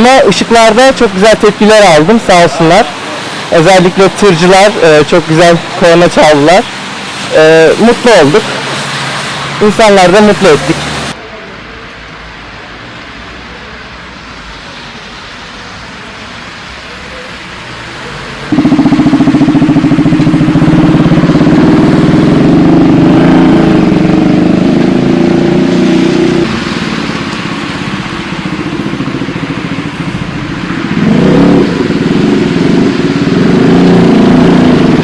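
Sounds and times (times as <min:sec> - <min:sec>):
motorcycle engine running hard: 0:18.5 - 0:26.6, 0:28.5 - 0:35.0.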